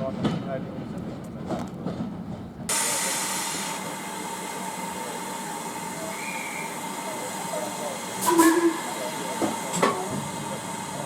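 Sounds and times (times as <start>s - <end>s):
low rumble of train running: 0.0s - 11.0s
steam hissing: 2.7s - 11.0s.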